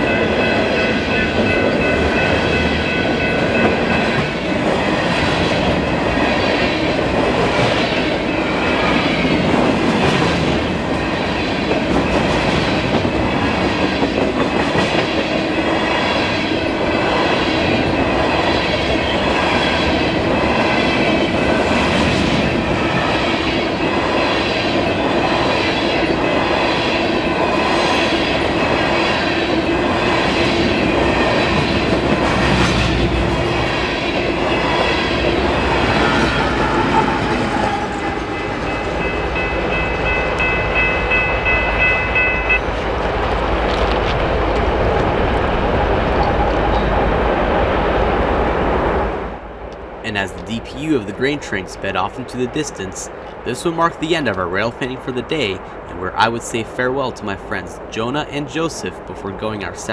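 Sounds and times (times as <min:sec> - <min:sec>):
high ringing from wheels: 0:00.0 - 0:04.6, 0:33.5 - 0:43.4
wheels clickety-clack on rails: 0:00.0 - 0:50.0
freight train rumbling past: 0:00.0 - 0:59.9.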